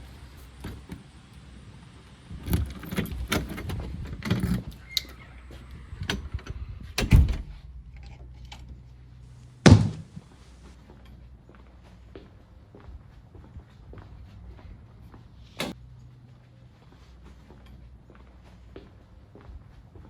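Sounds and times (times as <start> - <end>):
heavy thump: 9.6 - 10.2.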